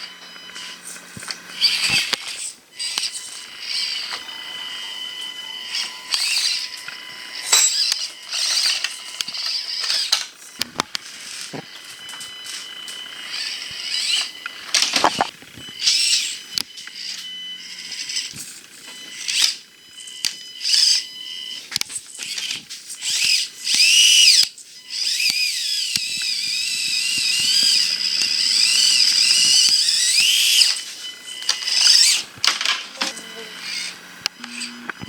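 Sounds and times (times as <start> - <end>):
small electric motor whining: 0.0 - 35.0.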